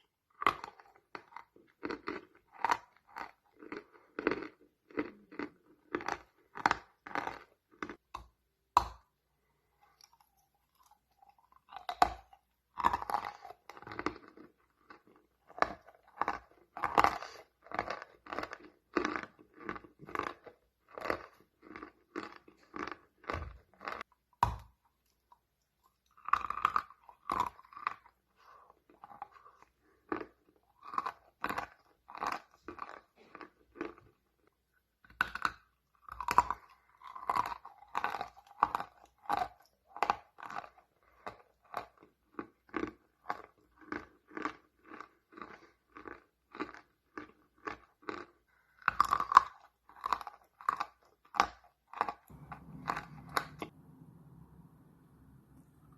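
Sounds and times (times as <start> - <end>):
chalk being chewed: 35.1 - 53.7.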